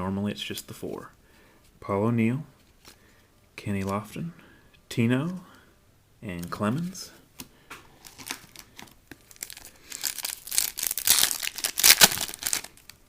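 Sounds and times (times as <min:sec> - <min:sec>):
wrapper tearing and crinkling: 0:08.0 - 0:13.0.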